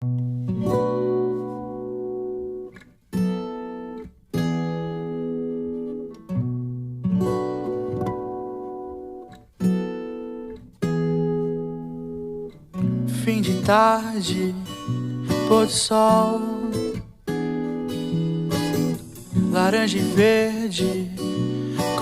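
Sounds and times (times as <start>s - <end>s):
acoustic guitar strumming chords: 0.0s - 22.0s.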